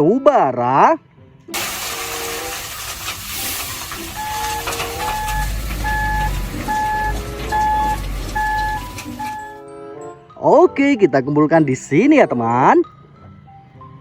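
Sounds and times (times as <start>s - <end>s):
toy truck engine rumble: 1.8s - 9.5s
reversing beeps: 4.1s - 9.6s.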